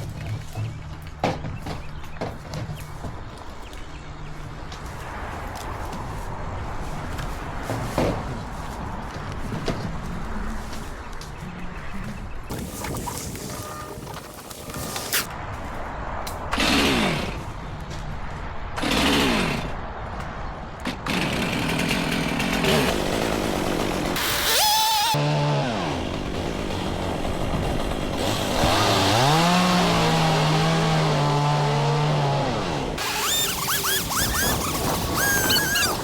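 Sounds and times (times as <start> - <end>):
chainsaw revving: 16.6 - 17.4, 18.8 - 19.7, 21.1 - 36.0.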